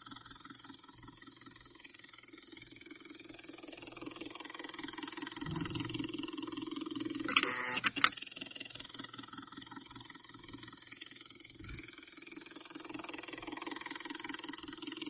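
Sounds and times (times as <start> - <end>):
infusion pump motor whirring: 5.1 - 6.6, 7.3 - 8.1, 11.6 - 11.9
sharp clicks: 7.3 - 8.1.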